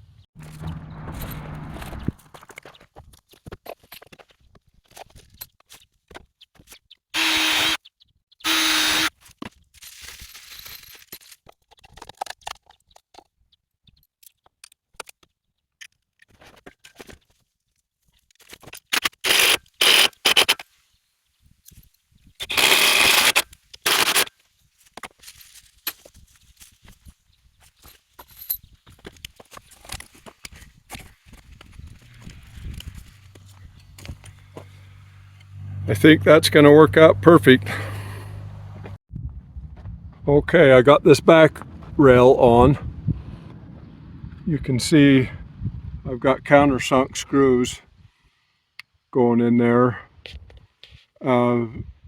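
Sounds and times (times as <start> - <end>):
power drill driving screws into wood: 7.2 - 7.8, 8.4 - 9.2, 18.9 - 20.6, 22.4 - 24.3.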